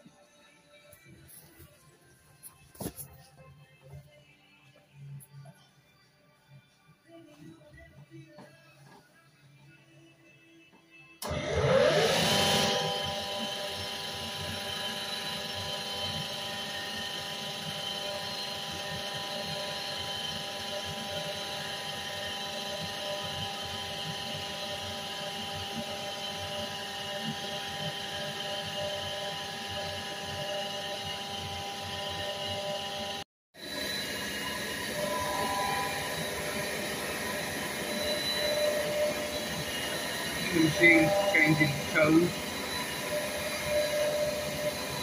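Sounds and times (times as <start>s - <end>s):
surfacing machine running: 11.2s - 45.0s.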